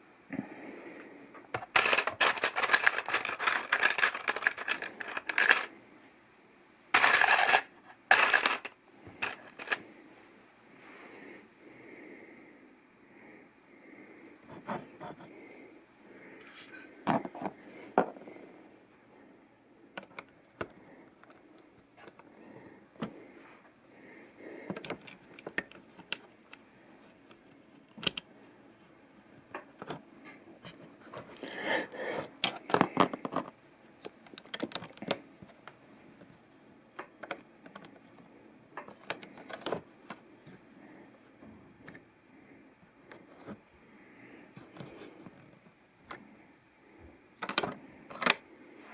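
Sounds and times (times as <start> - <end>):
plastic bricks clicking: 1.5 - 5.7, 6.9 - 9.8.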